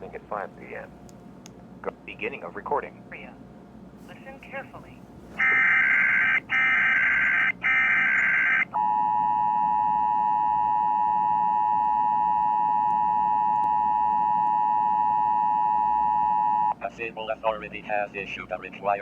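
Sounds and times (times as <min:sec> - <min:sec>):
digital header data bursts: 0:05.4 - 0:08.6.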